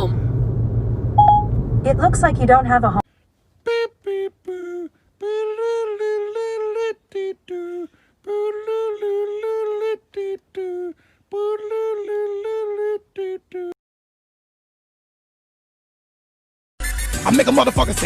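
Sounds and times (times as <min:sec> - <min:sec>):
person humming wordless tune: 0:03.6 - 0:13.8.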